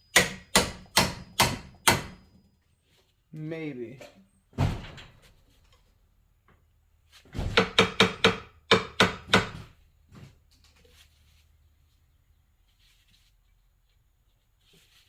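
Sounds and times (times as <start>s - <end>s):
hammer striking steel punch: 0.1s - 2.3s.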